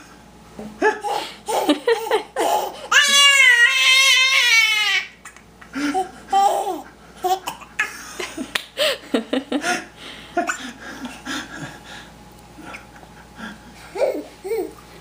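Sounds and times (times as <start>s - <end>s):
young child laughing: 0.8s - 3.4s.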